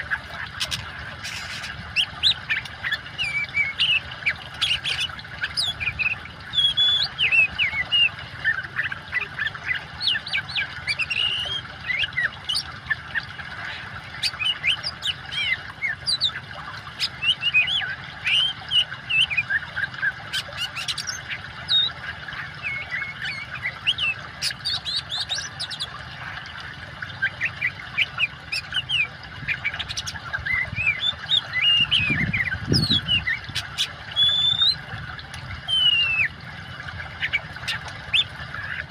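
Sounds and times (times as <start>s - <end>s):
running water hiss: 0.0s - 19.6s
bird singing: 0.0s - 26.4s, 27.1s - 34.9s, 35.6s - 38.9s.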